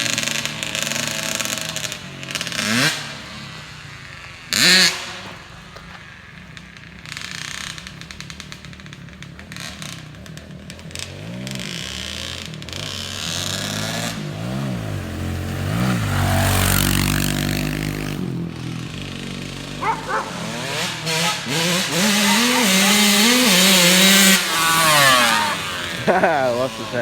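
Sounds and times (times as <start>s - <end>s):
snowmobile engine revving: 0.0s - 5.2s, 10.7s - 27.0s.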